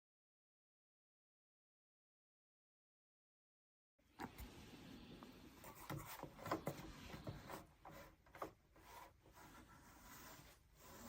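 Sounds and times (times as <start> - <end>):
objects rubbing and scraping: 4.2 - 11.0.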